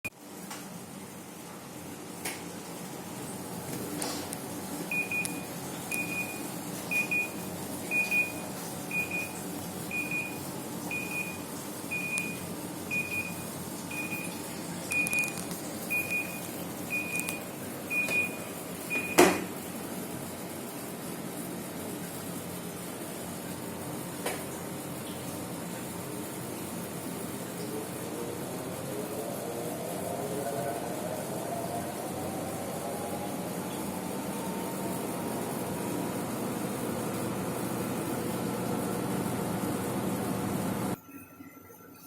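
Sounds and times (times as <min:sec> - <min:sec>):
low steady hum: 0:04.3 - 0:19.2
washing machine short high beeps: 0:04.8 - 0:19.5.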